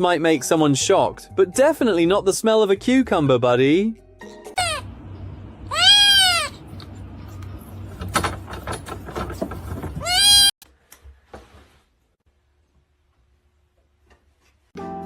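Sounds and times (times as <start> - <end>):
animal high calls: 5.7 - 6.6.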